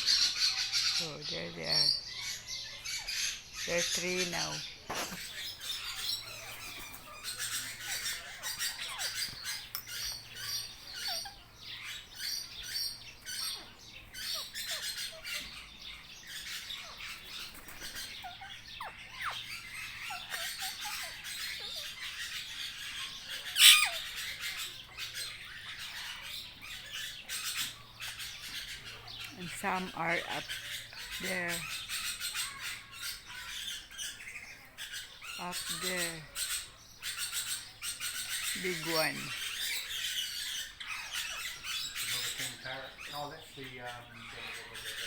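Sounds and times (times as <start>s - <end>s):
parrots chattering and squawking: 0.0s - 45.0s
loud parrot screech: 23.5s - 24.1s.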